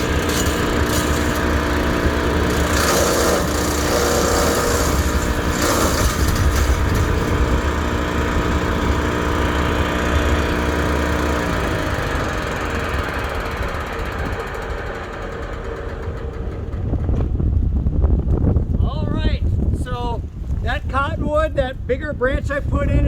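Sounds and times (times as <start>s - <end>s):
branches crackling in chipper: 0.0s - 11.6s
wood chipper running: 0.0s - 18.7s.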